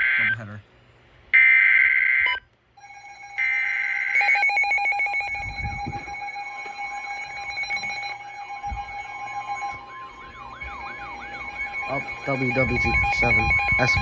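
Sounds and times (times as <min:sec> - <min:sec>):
screechy alert header data bursts: 0:02.8 - 0:14.0
steady attention tone: 0:02.8 - 0:14.0
rising and falling warble: 0:03.4 - 0:14.0.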